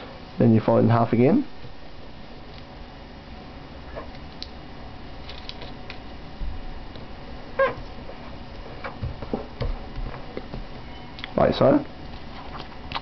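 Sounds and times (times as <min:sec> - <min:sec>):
short squeak or meow: 0:07.6 - 0:07.8, 0:10.8 - 0:11.2.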